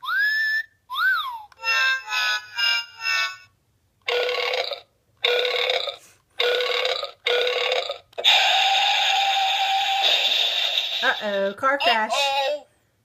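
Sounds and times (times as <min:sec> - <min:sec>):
long steady toy effect: 0:00.0 - 0:12.6
toy sound effect: 0:04.1 - 0:12.6.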